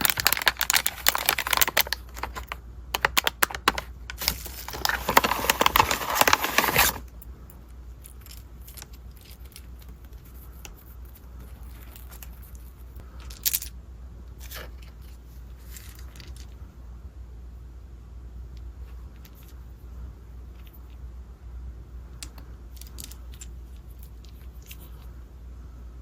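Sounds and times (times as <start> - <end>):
packaging crinkling and tearing: 0.0 - 7.0.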